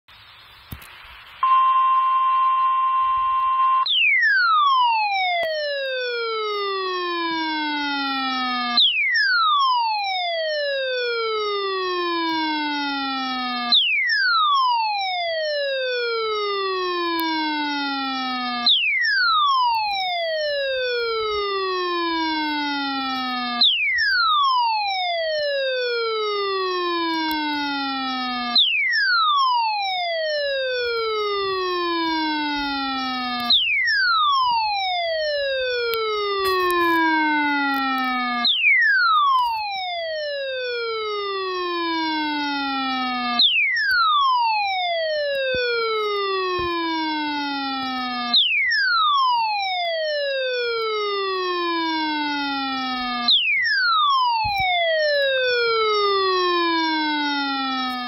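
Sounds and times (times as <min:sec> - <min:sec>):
static: 0:00.1 - 0:02.2
falling siren-like sweep: 0:03.0 - 0:58.0.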